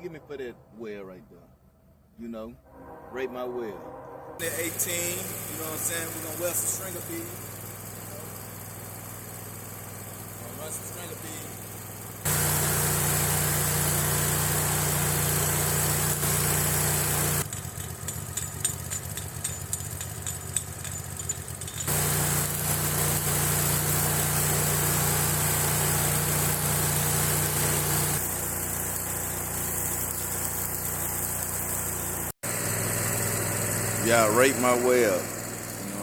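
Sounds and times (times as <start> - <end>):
low machine hum: 4.3 - 32.4
welding arc frying crackle: 4.4 - 36.0.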